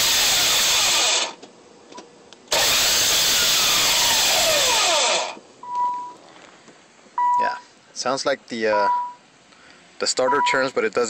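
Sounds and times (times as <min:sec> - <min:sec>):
starter motor whirring: 0:00.0 - 0:01.4, 0:02.5 - 0:05.4
short beep: 0:05.6 - 0:06.2, 0:07.2 - 0:07.6, 0:08.8 - 0:09.2, 0:10.3 - 0:10.7.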